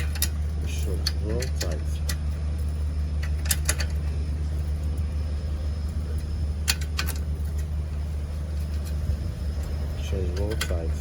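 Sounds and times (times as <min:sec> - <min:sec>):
spanner clicking on bolt: 0:00.0 - 0:02.2
low machine hum: 0:00.0 - 0:11.0.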